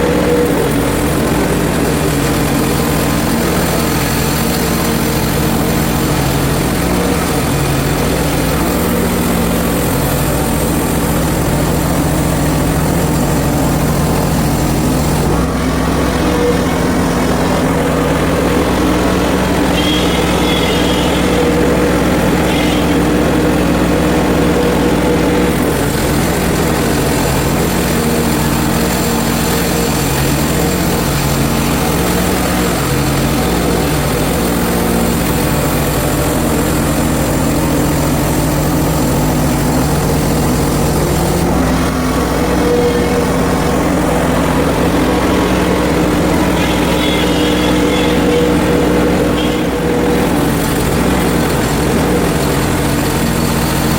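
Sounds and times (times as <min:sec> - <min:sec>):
sawmill gasoline engine running: 0:00.0 - 0:53.9.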